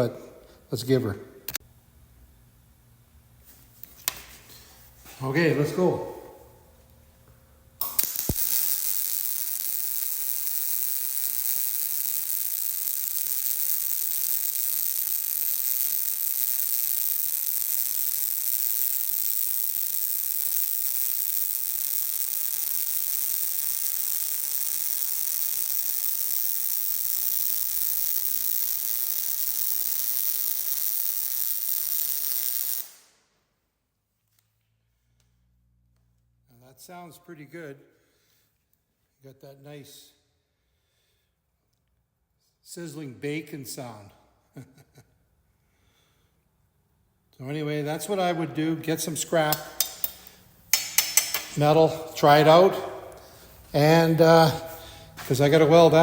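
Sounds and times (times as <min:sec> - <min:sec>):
welding arc crackling sizzle: 0:00.7 - 0:33.3, 0:47.8 - 0:56.0.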